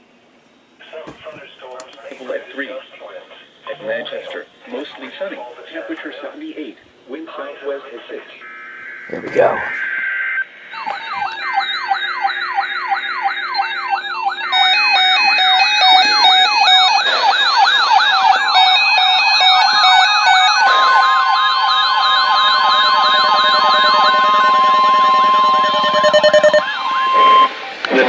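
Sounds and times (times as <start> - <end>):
weather alert radio sirens wailing: 10.8 - 27.6
stepped beeping tones: 21.2 - 26.6
steady alert tone: 22.4 - 26.6.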